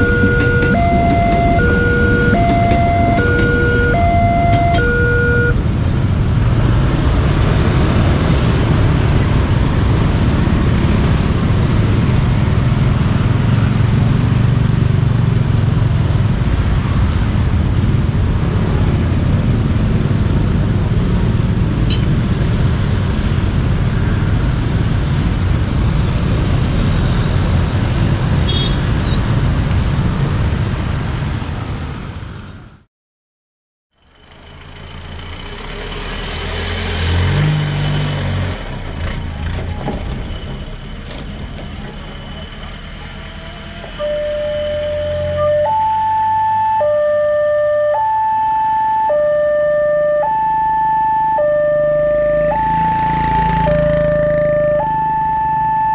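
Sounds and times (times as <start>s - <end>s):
two-tone crossing siren: 0.0s - 5.7s, 43.2s - 55.9s
road traffic rumble: 0.0s - 32.9s, 34.0s - 55.9s.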